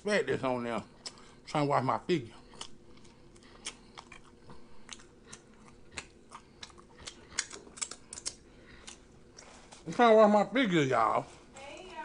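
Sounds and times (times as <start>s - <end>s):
wet chewing mouth clicks: 2.4s - 9.5s.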